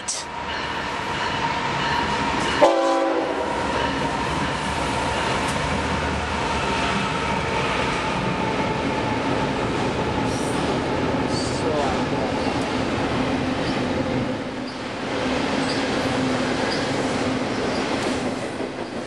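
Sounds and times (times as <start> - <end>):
freight train rumbling past: 0.0 - 19.0.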